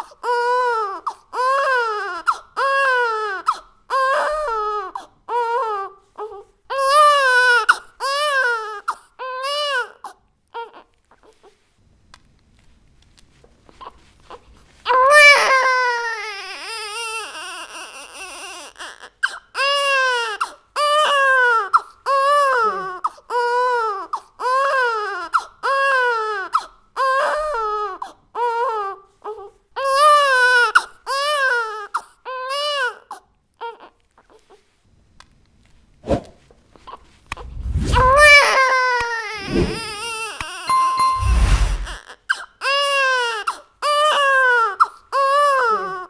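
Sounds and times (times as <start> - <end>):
baby crying: 14.9 - 28.9, 37.9 - 46.0.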